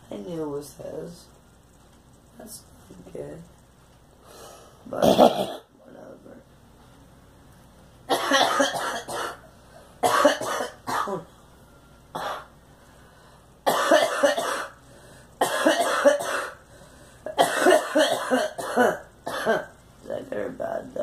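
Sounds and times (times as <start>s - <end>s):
girl coughing: 5.0s - 5.7s, 8.1s - 9.4s, 10.0s - 11.3s, 12.2s - 12.5s, 13.7s - 14.8s, 15.4s - 16.6s, 17.3s - 19.7s.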